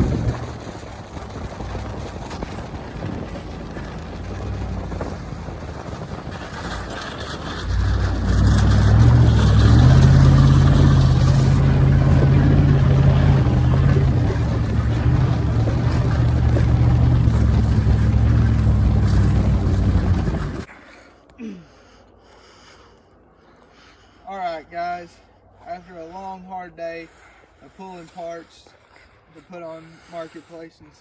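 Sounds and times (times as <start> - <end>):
vehicle engine running: 0.0 - 20.7.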